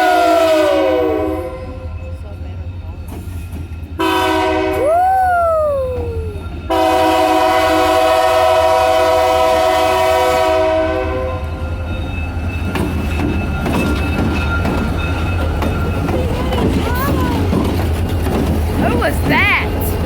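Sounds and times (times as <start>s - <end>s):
locomotive air horn blasts: 0.0s - 2.0s, 4.0s - 4.8s, 6.7s - 11.5s
train rumbling past: 0.0s - 20.0s.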